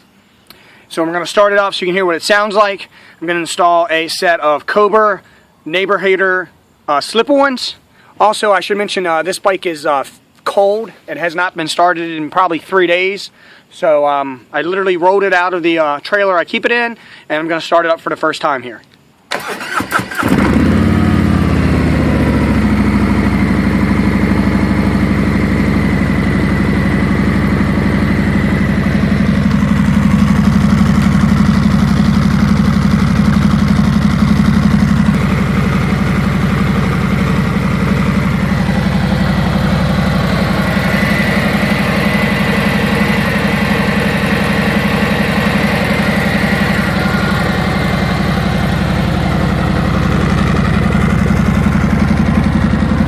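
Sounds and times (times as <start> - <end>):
motorcycle engine starting and idling: 19.3 - 53.0.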